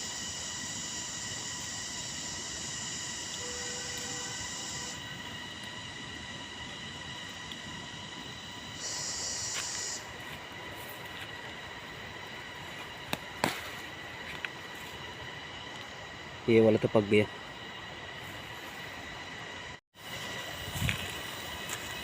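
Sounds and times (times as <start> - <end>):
loud high buzz: 0.0 - 16.5
insects whining: 0.0 - 22.0.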